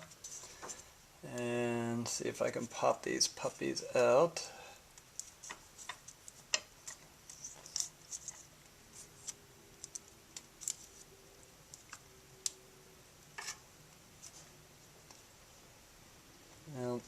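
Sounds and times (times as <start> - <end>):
stick clicking and scraping plastic: 5.0 - 8.5.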